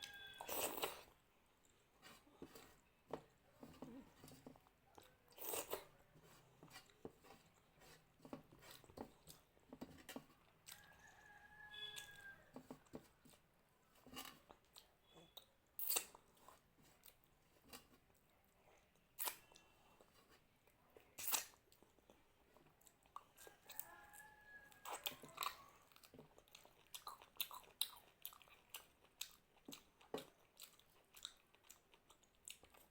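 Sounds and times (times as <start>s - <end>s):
faint high tone: 0.0s - 0.7s
person chewing food: 0.0s - 32.9s.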